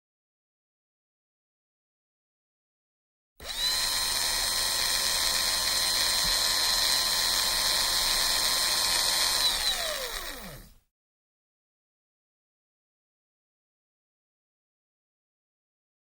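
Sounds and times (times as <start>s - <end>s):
small high-speed motor whining: 3.4s - 10.8s.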